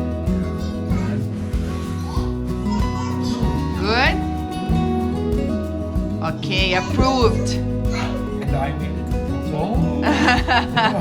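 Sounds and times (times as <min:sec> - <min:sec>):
background music with bass line: 0:00.0 - 0:11.0.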